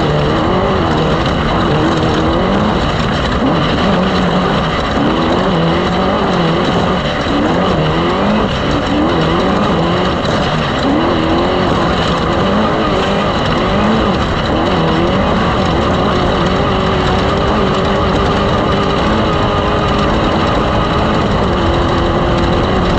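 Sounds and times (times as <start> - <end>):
loud engine running: 0.0 - 22.9.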